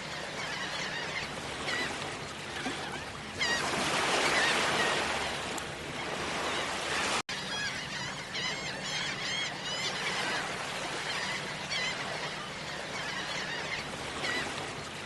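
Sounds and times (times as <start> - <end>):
birds calling: 0.0 - 15.0.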